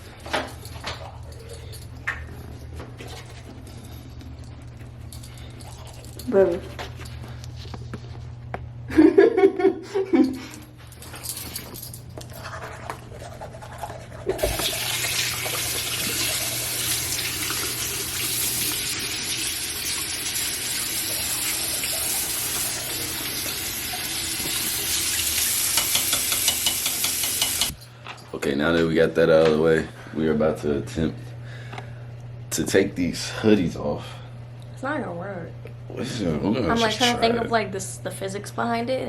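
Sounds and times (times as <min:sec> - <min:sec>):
tap water running into sink: 0:14.4 - 0:27.8.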